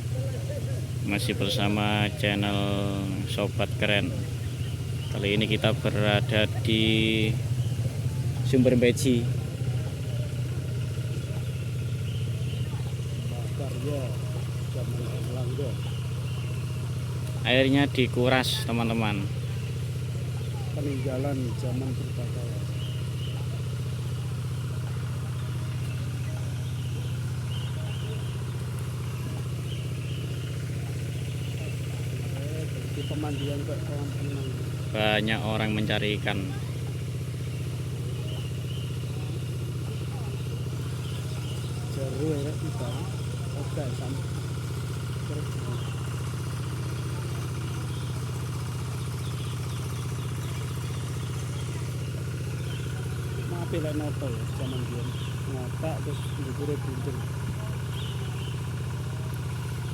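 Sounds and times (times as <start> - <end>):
small engine running: 0.0 - 59.9.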